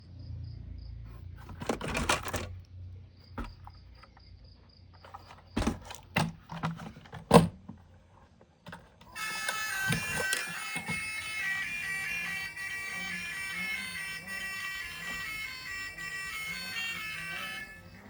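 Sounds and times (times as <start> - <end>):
plastic toys and packaging handled: 1.1 - 2.6, 4.9 - 18.0
rattling clicks: 1.4 - 2.6
music: 9.2 - 18.0.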